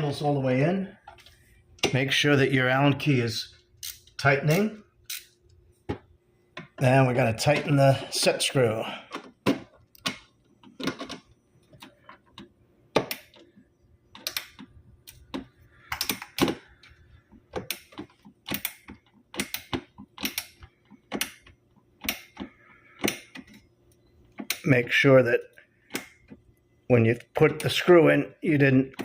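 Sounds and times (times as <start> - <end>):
allen key clicking on screw: 17.6 - 23.6.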